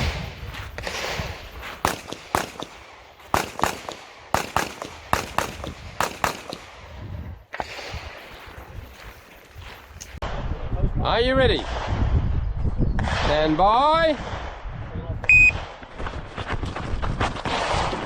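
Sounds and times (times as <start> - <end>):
rapid pistol fire: 1.8 - 6.9.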